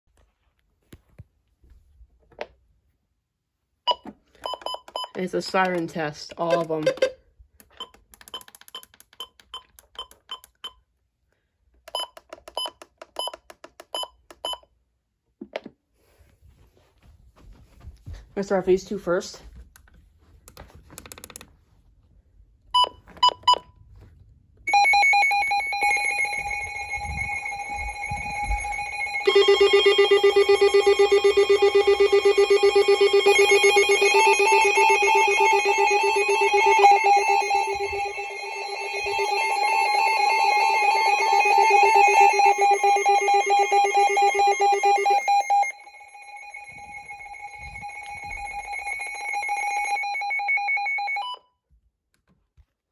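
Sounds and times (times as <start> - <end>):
rapidly pulsing high alarm tones: 24.7 - 51.3.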